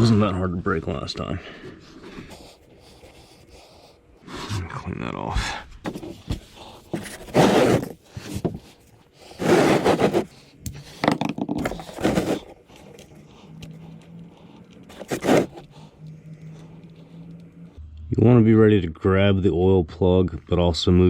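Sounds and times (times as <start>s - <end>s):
scraping rubbing strokes: 7.0s - 8.4s, 9.2s - 10.6s, 11.7s - 12.9s, 14.9s - 15.9s.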